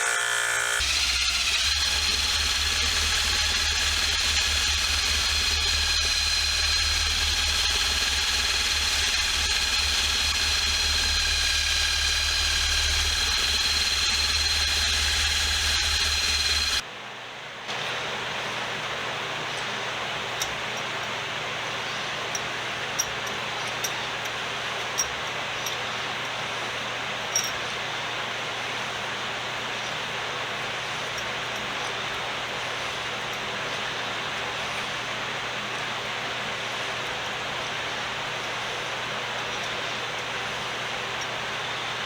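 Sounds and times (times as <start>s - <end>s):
power tool motor whining: 0.0s - 16.8s.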